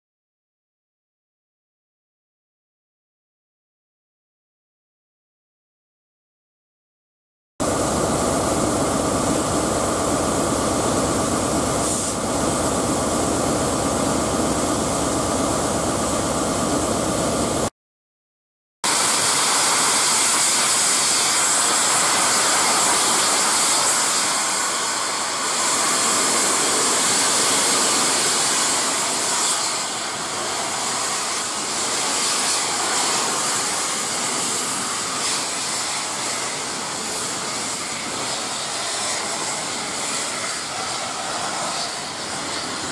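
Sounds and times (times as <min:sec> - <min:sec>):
steam hissing from locomotive: 0:07.6 - 0:17.3, 0:18.9 - 0:42.9
machinery running with held tones: 0:07.6 - 0:17.7.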